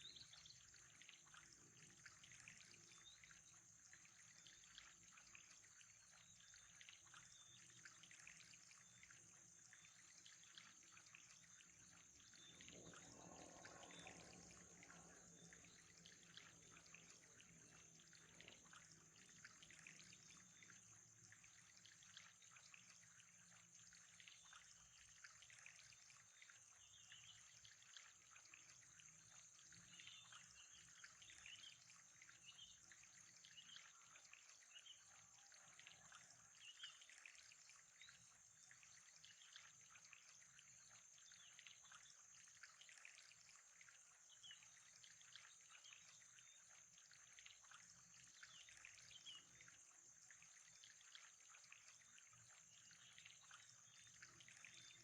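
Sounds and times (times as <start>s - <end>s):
water trickling: 0.0s - 55.0s
rushing water: 12.3s - 26.5s.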